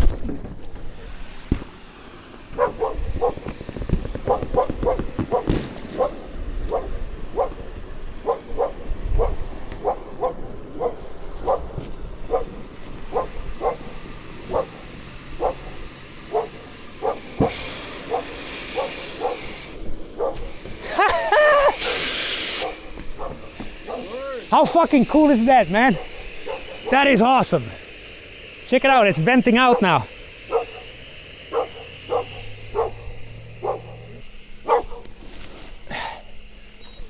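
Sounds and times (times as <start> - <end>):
gas hissing from cylinder: 0.0 - 37.0
dog barking and yapping: 2.5 - 3.6, 4.2 - 14.8, 15.4 - 22.0, 22.6 - 24.6, 25.2 - 27.2, 29.6 - 35.2.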